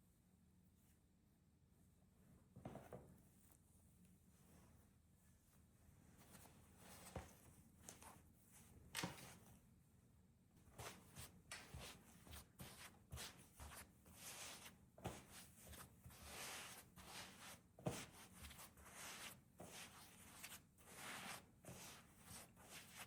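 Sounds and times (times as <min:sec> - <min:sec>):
rustling and scraping of objects: 0:04.3 - 0:09.6.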